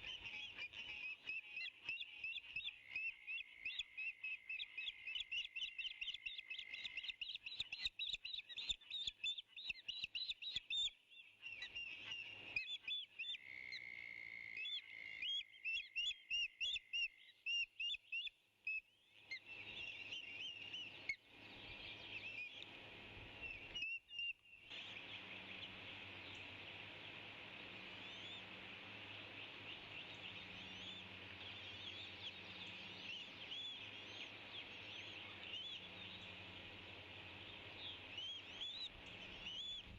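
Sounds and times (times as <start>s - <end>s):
eagle chick chirping: 19.3s - 39.9s
dense high hiss: 21.3s - 23.8s, 24.7s - 39.9s.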